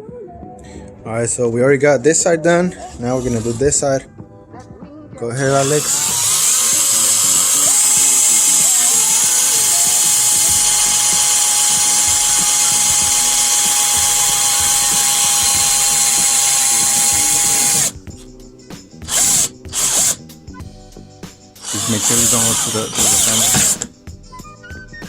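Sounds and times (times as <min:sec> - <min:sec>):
power drill boring metal: 0:02.7 - 0:04.0, 0:05.4 - 0:18.0, 0:19.0 - 0:20.2, 0:21.6 - 0:23.9.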